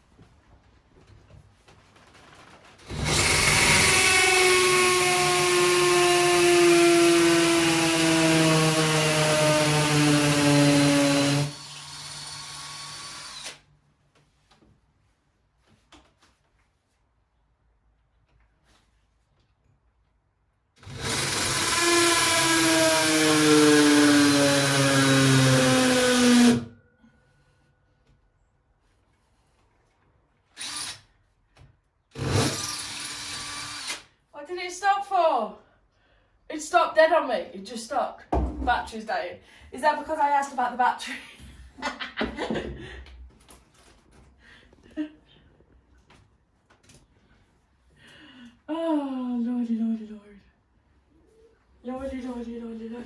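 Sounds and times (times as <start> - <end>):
cordless drill whining: 2.8 - 13.6, 20.8 - 26.7, 30.6 - 31.0, 32.2 - 34.1.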